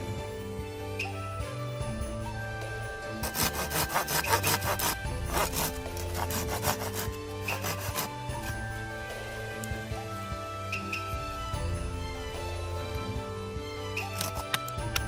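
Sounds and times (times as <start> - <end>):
background music: 0.0 - 15.0
hand saw cutting wood: 3.2 - 8.7, 14.1 - 15.0.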